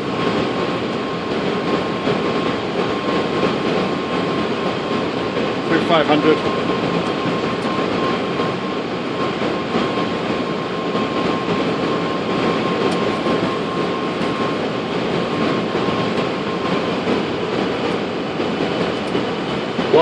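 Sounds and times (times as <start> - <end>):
airflow and engine noise: 0.0 - 20.0.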